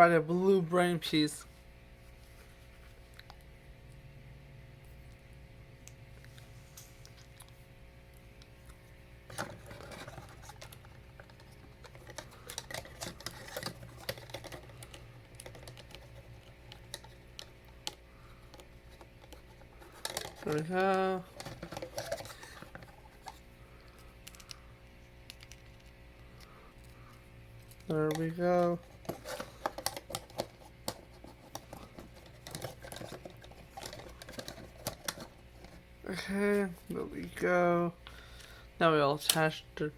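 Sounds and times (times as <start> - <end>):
faint steady hum: 0.0 - 39.9
plastic parts clicking together: 9.3 - 23.4.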